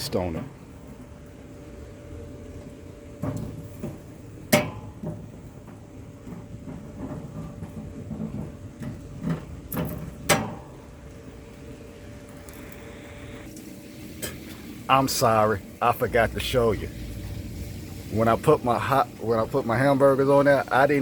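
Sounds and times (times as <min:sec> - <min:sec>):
cooking tools knocking on grill: 0:03.3 - 0:05.4.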